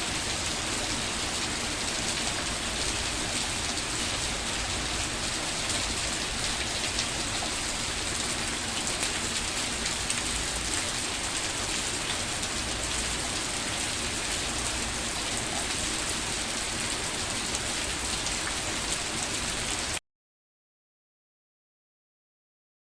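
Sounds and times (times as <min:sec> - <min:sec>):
steady rain falling: 0:00.0 - 0:20.0.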